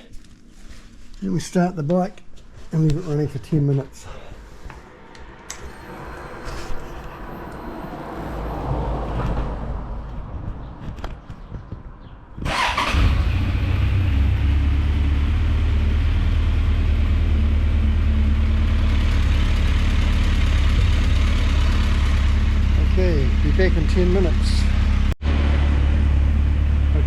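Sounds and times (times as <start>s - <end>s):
motorcycle engine starting and idling: 5.4s - 10.3s, 12.4s - 27.0s.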